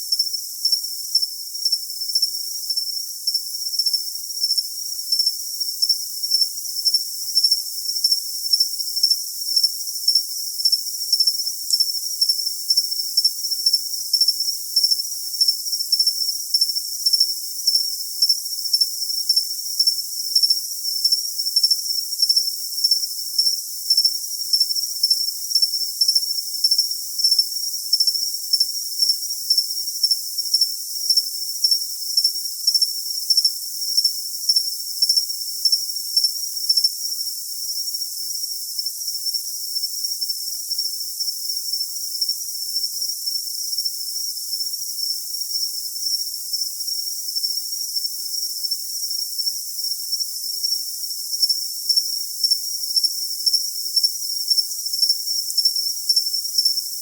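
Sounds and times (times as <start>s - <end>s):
cricket chirping: 0.0s - 57.0s.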